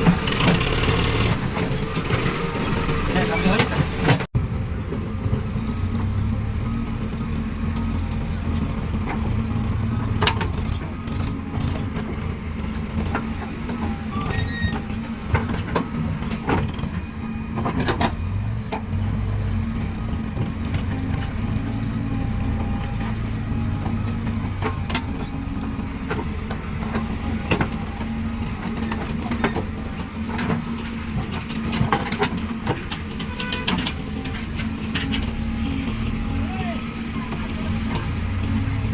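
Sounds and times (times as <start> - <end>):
diesel engines running: 0.0 - 38.9
sharp knocks and clatters: 28.4 - 35.4.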